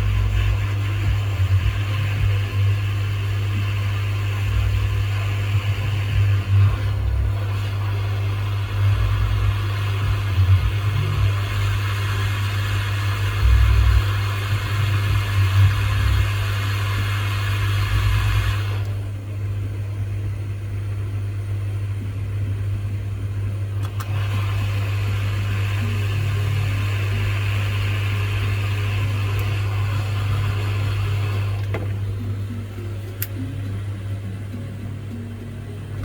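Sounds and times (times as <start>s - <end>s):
airy blowing hiss: 0.0s - 18.9s, 24.1s - 33.1s
low electrical hum: 0.0s - 36.0s.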